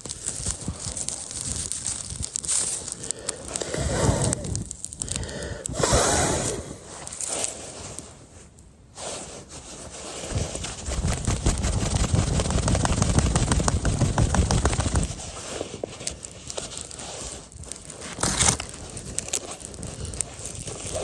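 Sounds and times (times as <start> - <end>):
campfire crackling and popping: 0.0 - 5.8, 10.3 - 21.0.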